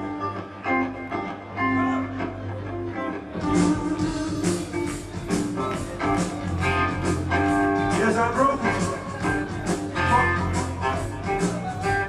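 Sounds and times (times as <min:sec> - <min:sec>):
bass line: 0:00.0 - 0:12.0
drums and cymbals: 0:03.4 - 0:12.0.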